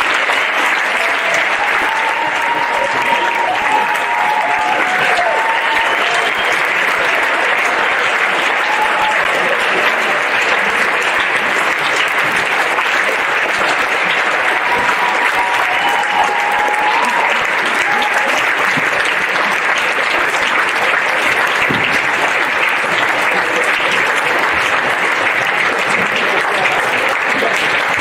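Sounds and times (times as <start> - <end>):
audience applauding: 0.0 - 28.0
whistles and cheers: 0.7 - 7.4, 8.4 - 9.5, 14.4 - 18.5.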